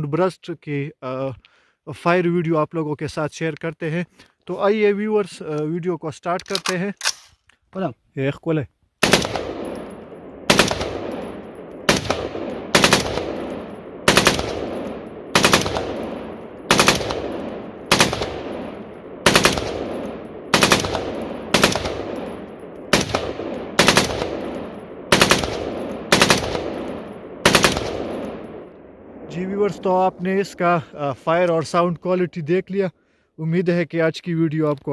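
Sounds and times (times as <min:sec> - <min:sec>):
rifle firing bursts: 0:09.0 - 0:28.6.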